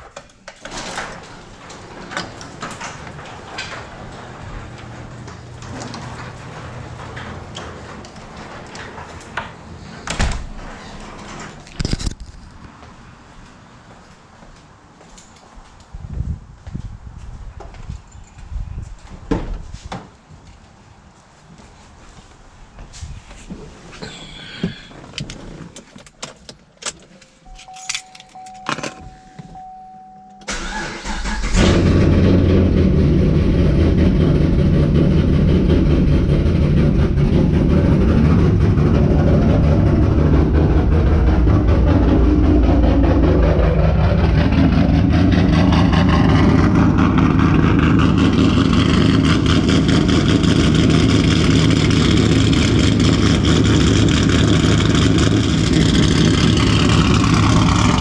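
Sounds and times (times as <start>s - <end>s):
car engine starting and idling: 0.3s - 12.4s, 26.8s - 58.0s
short steady tone: 27.2s - 30.5s.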